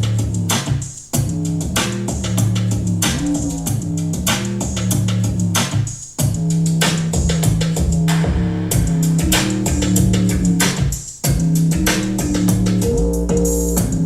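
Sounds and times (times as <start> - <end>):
pop song with drums and bass: 0.0 - 14.0.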